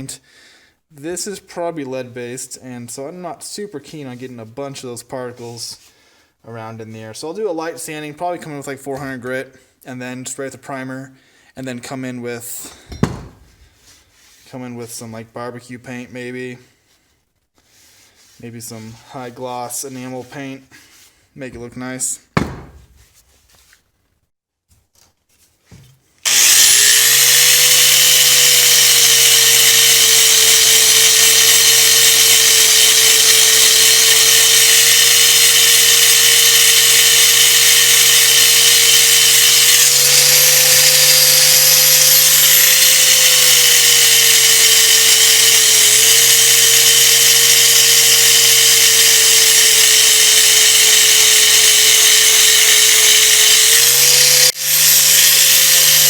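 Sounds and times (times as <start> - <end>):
electric power tool motor running: 26.2 - 56.0.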